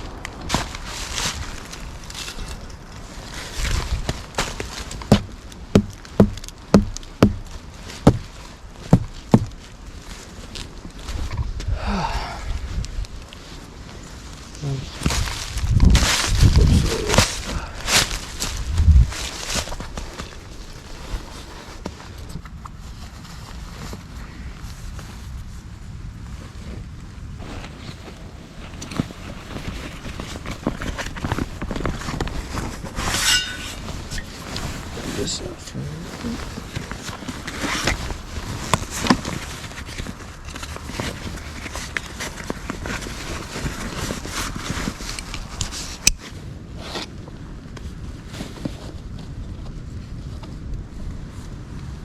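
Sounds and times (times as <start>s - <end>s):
wood snapping: 0.0s - 9.7s
faint rustles and crackles: 0.0s - 52.0s
wind buffeting microphone: 0.0s - 52.0s.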